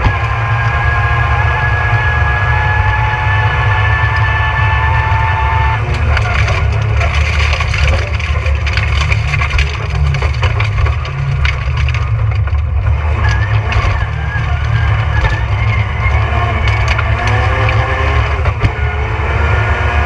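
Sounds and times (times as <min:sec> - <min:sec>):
rally car engine and road drone: 0:00.0 - 0:20.0
gravel hitting car underside: 0:05.8 - 0:18.8.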